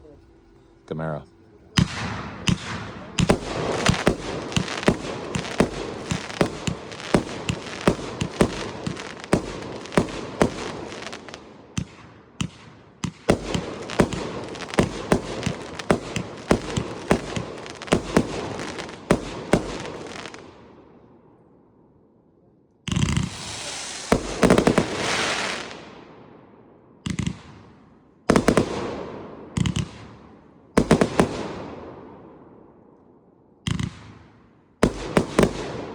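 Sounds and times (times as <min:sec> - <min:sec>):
firework crackle: 0:01.7 - 0:20.5, 0:22.9 - 0:26.0, 0:28.3 - 0:28.8
firework shots: 0:01.7 - 0:20.9, 0:22.9 - 0:32.8, 0:33.6 - 0:35.9.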